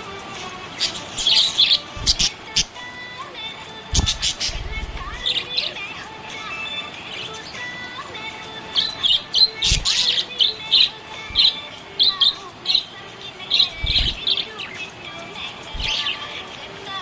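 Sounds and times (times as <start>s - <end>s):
budgerigar chirping: 0.8s - 2.8s, 3.9s - 5.6s, 8.7s - 12.9s, 13.6s - 14.5s, 15.7s - 16.2s
low thumps: 3.9s - 5.3s.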